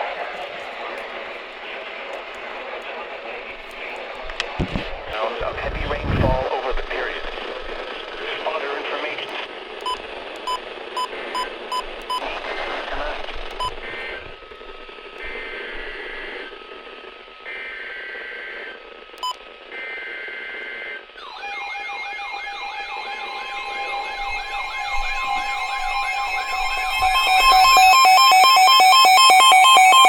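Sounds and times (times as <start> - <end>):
radio hiss: 0.0 - 21.2, 22.4 - 29.6
warbling siren-like tone: 21.2 - 30.0
digital data bursts: 21.3 - 30.0
two-tone attention signal: 22.5 - 30.0.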